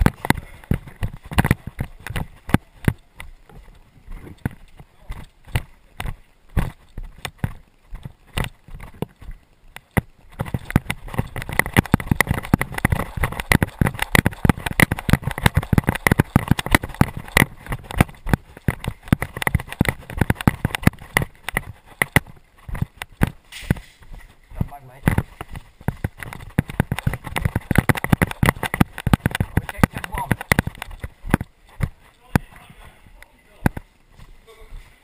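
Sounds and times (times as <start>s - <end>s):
footsteps walking: 0.0s - 35.0s
running footsteps: 0.0s - 35.0s
rustling: 0.0s - 35.0s.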